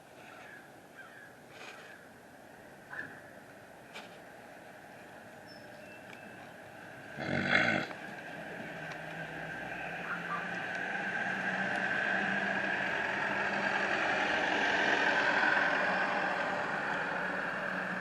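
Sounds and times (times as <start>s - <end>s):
motor vehicle passing: 4.2s - 18.0s.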